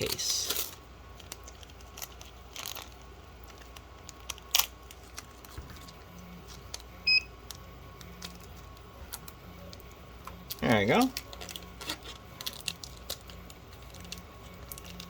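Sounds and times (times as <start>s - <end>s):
high beep: 7.1s - 7.3s.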